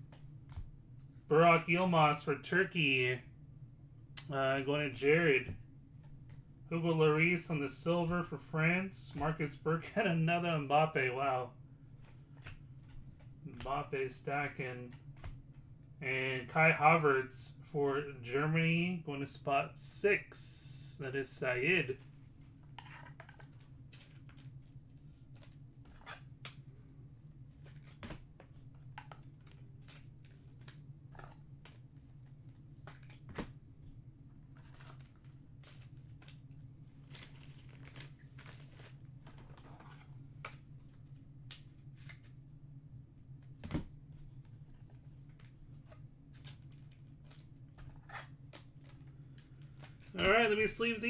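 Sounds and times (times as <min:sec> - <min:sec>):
low electrical hum: 0:00.0 - 0:51.0
trading cards handled: 0:22.0 - 0:26.7, 0:34.4 - 0:42.4, 0:43.4 - 0:51.0.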